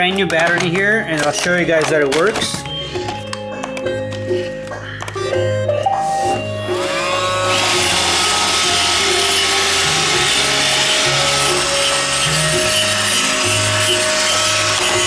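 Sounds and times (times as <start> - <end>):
background music: 0.0 - 15.0
robot vacuum motors whining: 6.1 - 15.0.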